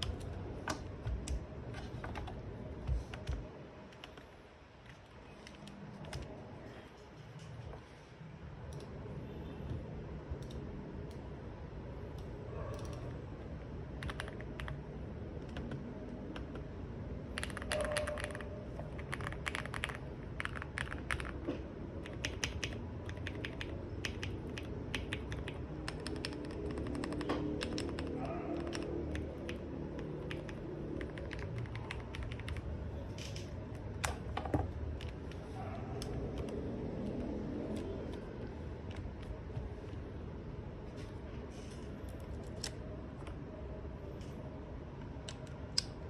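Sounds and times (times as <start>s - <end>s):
mechanical keyboard typing: 0.0s - 4.4s, 12.2s - 13.2s, 13.9s - 16.7s, 17.3s - 40.0s.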